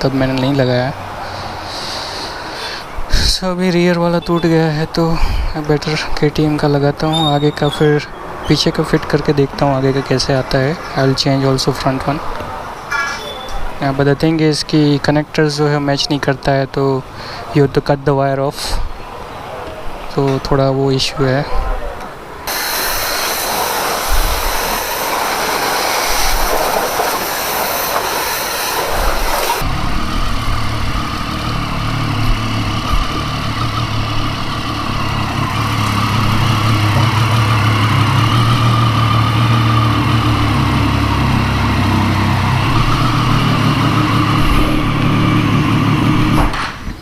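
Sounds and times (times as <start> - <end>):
wind rush: 22.5 - 31.5
motorcycle engine running: 29.6 - 46.4.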